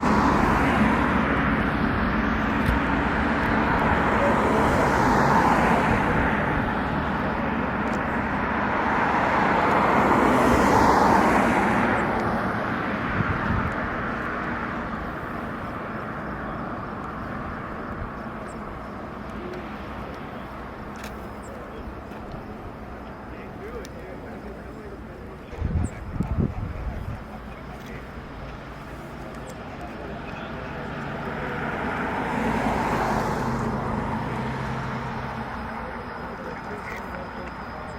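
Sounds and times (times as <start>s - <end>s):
aircraft engine rushing: 0.0s - 37.9s.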